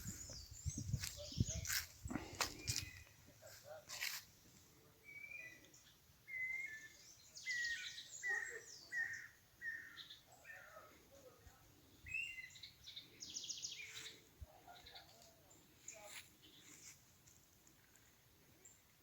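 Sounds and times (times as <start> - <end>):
songbirds whistling: 2.5 - 3.2, 5.1 - 10.7, 12.1 - 14.1.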